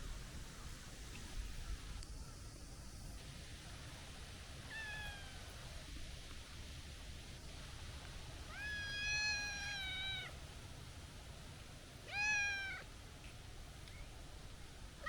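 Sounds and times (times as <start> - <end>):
cat meowing: 4.7 - 5.6, 8.5 - 10.4, 12.0 - 12.9.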